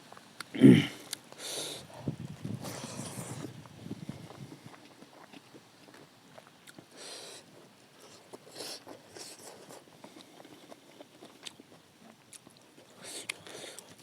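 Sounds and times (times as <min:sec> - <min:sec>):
soft slurps: 0:00.4 - 0:14.0
person chewing: 0:04.3 - 0:14.0.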